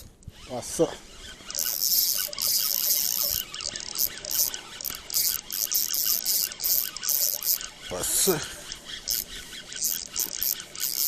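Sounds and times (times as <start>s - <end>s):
fishing reel whirring: 0.0s - 11.0s.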